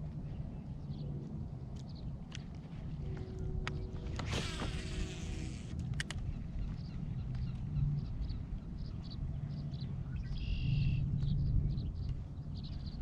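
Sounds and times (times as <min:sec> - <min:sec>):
wind rumbling on microphone: 0:00.0 - 0:13.0
birds chirping: 0:03.1 - 0:13.0.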